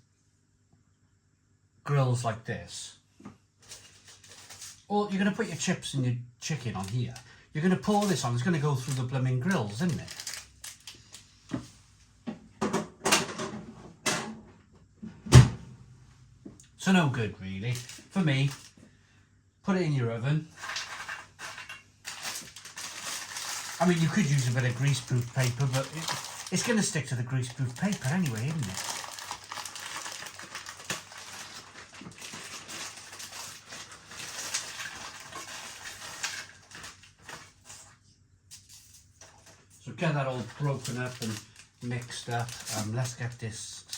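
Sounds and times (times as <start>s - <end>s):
frozen food rustling and clattering: 3.6s - 4.9s, 6.4s - 11.7s, 17.7s - 18.8s, 20.5s - 43.9s
kitchen knocks and clatters: 12.3s - 14.5s.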